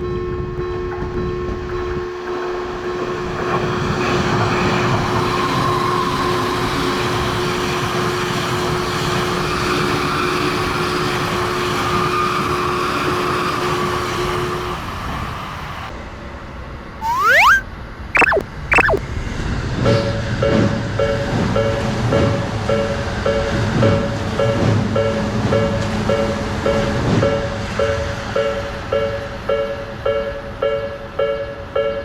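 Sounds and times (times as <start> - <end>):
rising whistle-like sweep: 17.0 - 17.6, 18.2 - 19.0
train wheel and running noise: 19.7 - 32.0.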